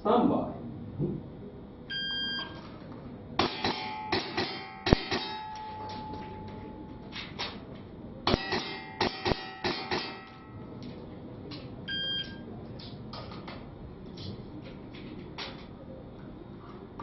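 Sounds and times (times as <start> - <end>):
electronic buzzer beep: 1.9 - 2.6, 11.9 - 12.5.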